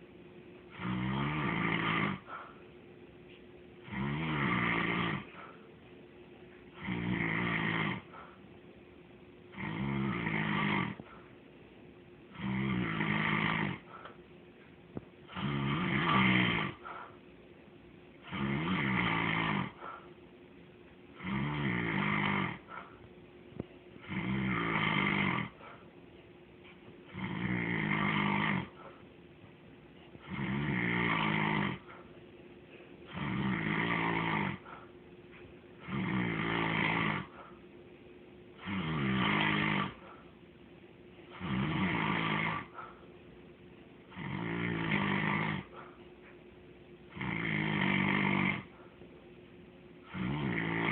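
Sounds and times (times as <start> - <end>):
person snoring: 0.7 - 2.5, 3.8 - 5.6, 6.7 - 8.4, 9.5 - 11.2, 12.3 - 14.2, 15.3 - 17.1, 18.2 - 20.1, 21.2 - 22.9, 24.0 - 25.8, 27.1 - 29.0, 30.2 - 32.1, 33.1 - 34.9, 35.8 - 37.5, 38.6 - 40.2, 41.3 - 42.9, 44.1 - 46.0, 47.1 - 48.8, 50.1 - 50.9.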